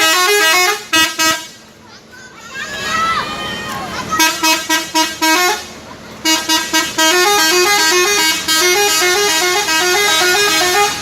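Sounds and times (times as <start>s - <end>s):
musical bus horn melody: 0.0s - 1.6s, 4.2s - 11.0s.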